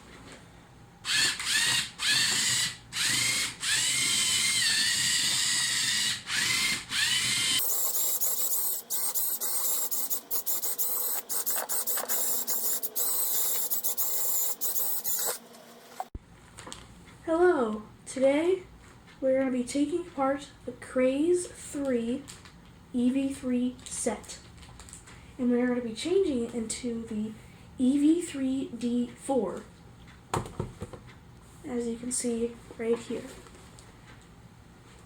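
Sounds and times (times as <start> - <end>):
small electric motors whining: 1.0 - 16.1.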